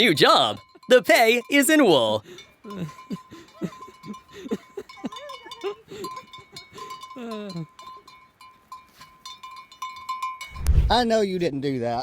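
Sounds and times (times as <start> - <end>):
small bells clinking: 0.0 - 10.6.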